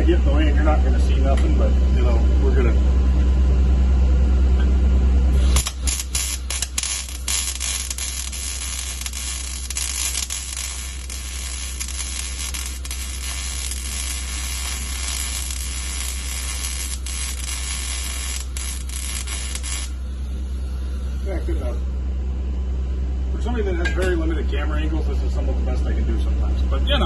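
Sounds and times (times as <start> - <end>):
loud low hum: 0.0 - 27.0
welding arc crackling: 5.4 - 20.0.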